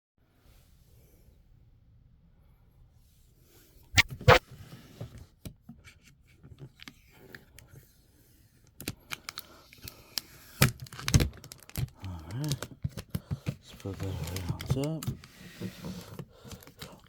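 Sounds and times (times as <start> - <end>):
packaging clicks: 9.1 - 15.3, 16.0 - 17.0
packaging rustling: 10.8 - 15.3.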